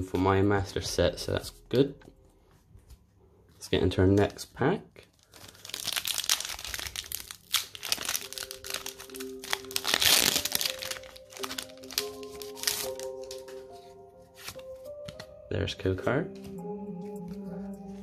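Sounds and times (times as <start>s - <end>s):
soft background music: 0.0s - 4.6s, 6.0s - 18.0s
foil wrapper crinkling and tearing: 5.0s - 13.6s.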